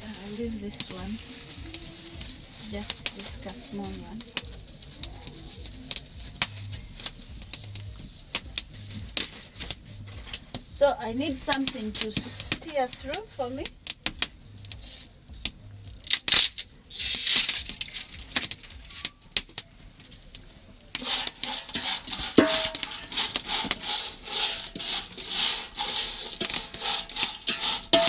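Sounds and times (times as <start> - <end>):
fish crackling in a frying pan: 0.0 - 28.0
utensil striking pan: 20.9 - 28.0.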